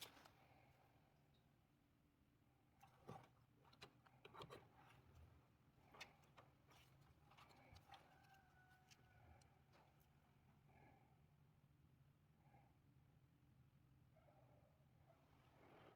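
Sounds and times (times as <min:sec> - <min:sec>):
faint hum: 0:08.7 - 0:15.9.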